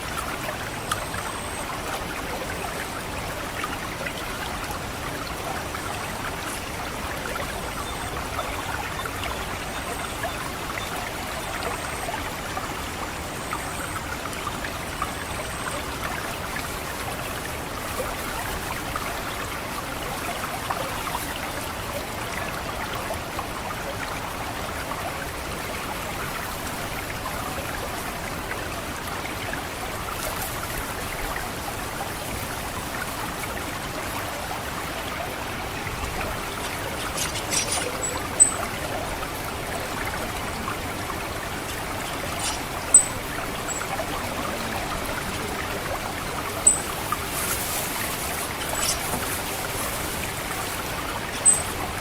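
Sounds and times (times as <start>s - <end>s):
water trickling and gurgling: 0.0s - 52.0s.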